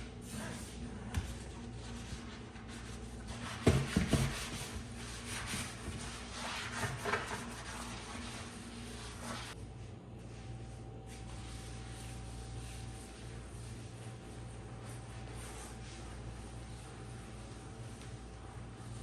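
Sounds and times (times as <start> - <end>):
steady low hum: 0.0 - 19.0
rubbing and scraping: 0.3 - 9.6.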